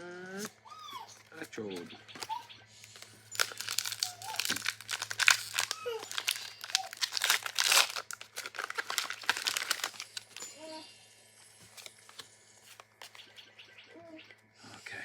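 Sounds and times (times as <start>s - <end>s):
foil wrapper crinkling and tearing: 2.1s - 10.5s.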